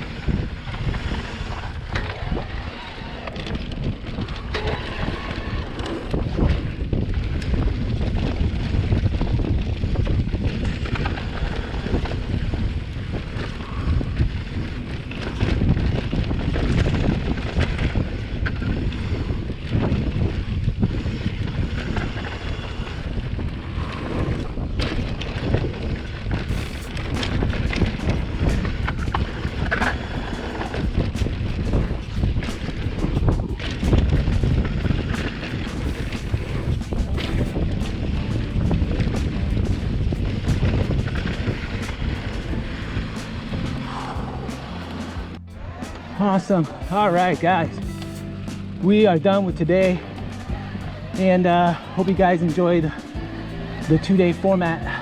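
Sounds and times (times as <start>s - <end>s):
bike rattles and clicks: 0.0s - 55.0s
wind buffeting microphone: 0.0s - 55.0s
low uneven rumble: 26.2s - 55.0s.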